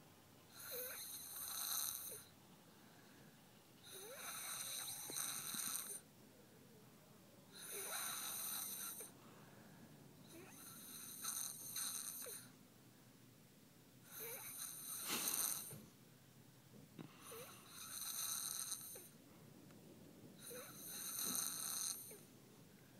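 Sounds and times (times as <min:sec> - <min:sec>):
person snoring: 0:14.1 - 0:15.7, 0:20.4 - 0:22.2.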